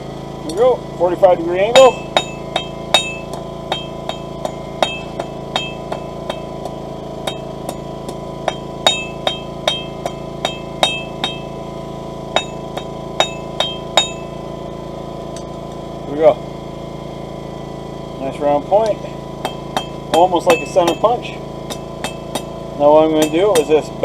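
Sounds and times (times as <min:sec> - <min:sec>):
hammer striking steel on anvil: 0:01.6 - 0:11.6, 0:12.3 - 0:14.5, 0:18.8 - 0:23.9.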